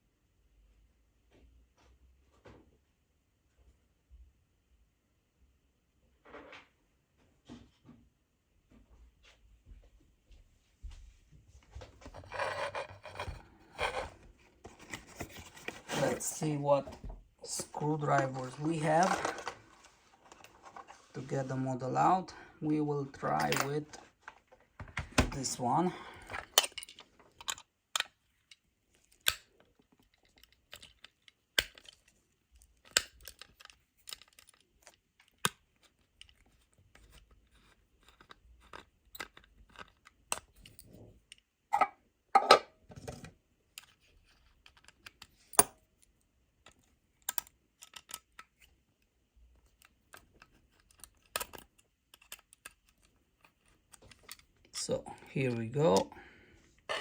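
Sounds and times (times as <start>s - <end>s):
scraping and rattling: 11.9s - 21.3s.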